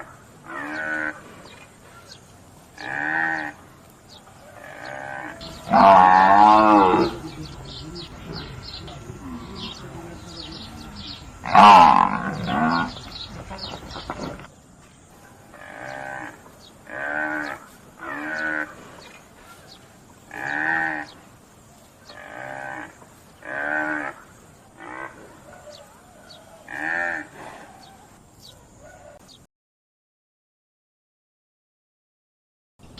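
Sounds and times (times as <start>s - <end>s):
buffalo calling: 4.4s - 14.5s, 15.5s - 19.6s, 20.3s - 21.2s, 22.1s - 25.9s.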